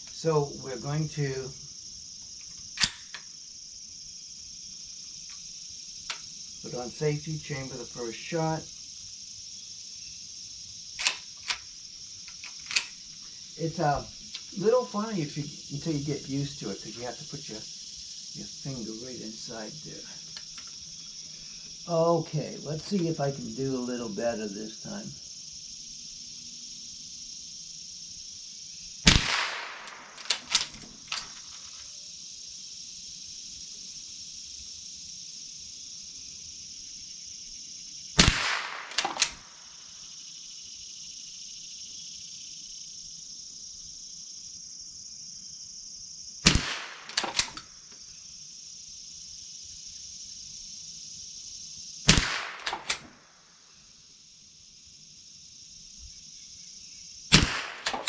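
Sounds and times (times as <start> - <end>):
rifle slide clicks: 2.8 - 3.2, 29.1 - 31.5, 38.2 - 39.4, 46.5 - 47.6, 52.1 - 53.1, 57.4 - 58.0
rifle shots: 29.1 - 30.8, 38.2 - 39.5, 46.5 - 47.6, 52.1 - 53.1, 57.3 - 58.0.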